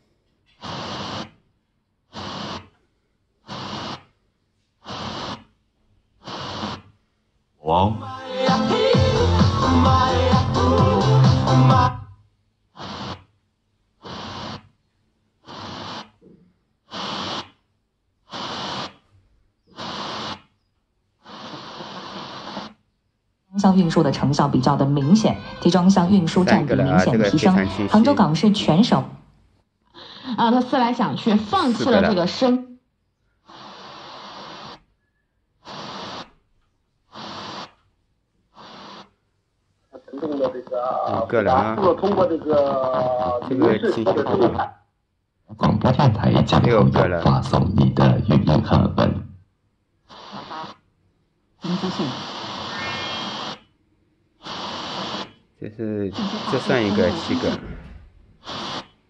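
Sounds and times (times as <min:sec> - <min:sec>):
radio static hiss bursts: 0:00.0 - 0:02.8, 0:03.4 - 0:07.0, 0:08.4 - 0:11.9, 0:12.7 - 0:13.4, 0:14.0 - 0:22.9, 0:23.6 - 0:29.3, 0:30.0 - 0:32.6, 0:33.4 - 0:35.0, 0:35.6 - 0:39.2, 0:39.8 - 0:44.8, 0:45.5 - 0:49.3, 0:50.0 - 0:50.9, 0:51.6 - 0:59.0.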